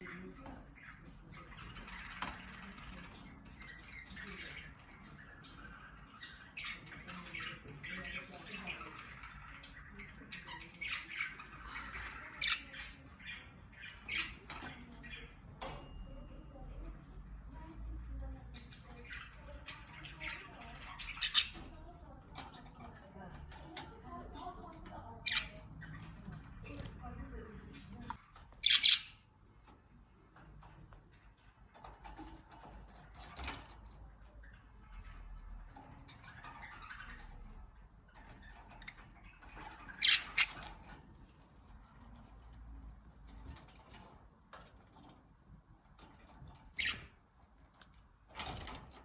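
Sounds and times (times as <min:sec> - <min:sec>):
budgerigar chirping and squawking: 0:19.0 - 0:21.8, 0:26.6 - 0:29.3, 0:38.8 - 0:40.8, 0:46.8 - 0:47.1
budgerigar chirping: 0:28.6 - 0:29.3.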